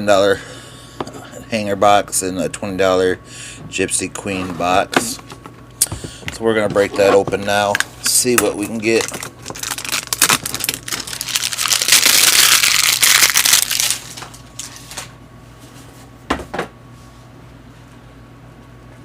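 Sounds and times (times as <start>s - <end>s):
plastic wrap crinkling and tearing: 8.6s - 15.0s.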